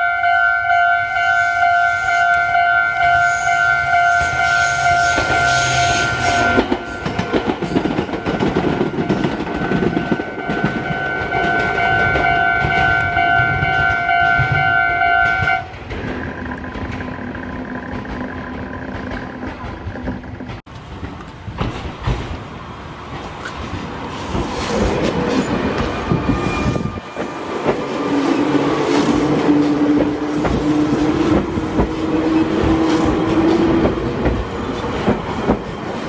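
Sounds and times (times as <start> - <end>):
level crossing warning bell: 0.0 - 15.7
train wheels clacking over rail joints: 4.1 - 36.0.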